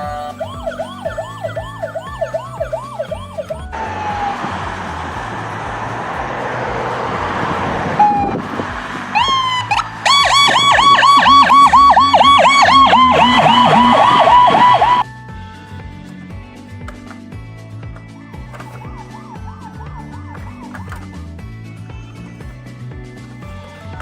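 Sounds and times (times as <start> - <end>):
yelp siren: 0.0 - 4.9, 8.0 - 8.5, 9.2 - 15.0, 18.6 - 21.5
second siren pattern: 0.0 - 5.2, 7.9 - 8.5, 9.1 - 15.0, 18.7 - 21.5
steady tone: 0.0 - 15.0
rushing noise: 3.7 - 15.0.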